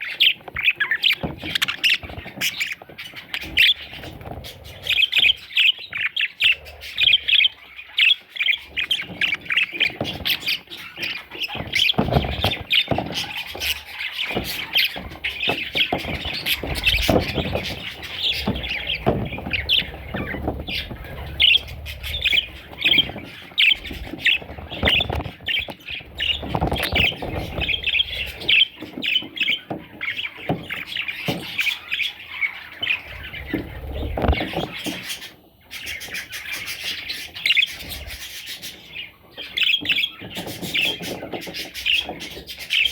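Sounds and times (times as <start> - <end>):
budgerigars chirping and chattering: 0.0 - 42.9
low knocks and rustles: 0.5 - 5.4, 8.8 - 31.8, 32.6 - 35.3.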